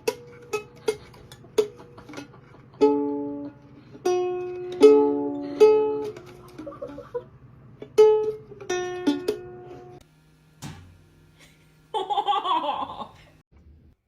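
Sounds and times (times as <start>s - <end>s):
plucked string music: 0.0s - 10.0s.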